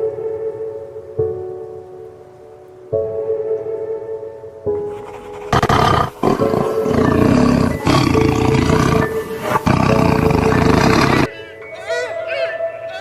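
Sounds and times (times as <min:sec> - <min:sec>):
background music with held tones: 0:00.0 - 0:13.0
big cat roaring: 0:05.3 - 0:11.3.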